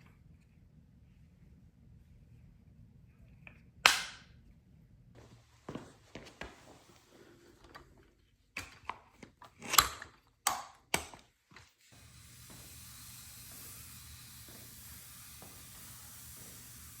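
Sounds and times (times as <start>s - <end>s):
steady hiss: 11.9s - 17.0s.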